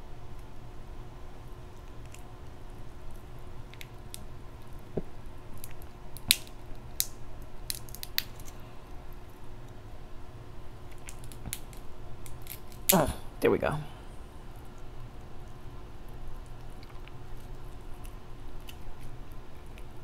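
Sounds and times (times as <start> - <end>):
crab shells cracking: 5.5 - 9.8, 10.8 - 13.0.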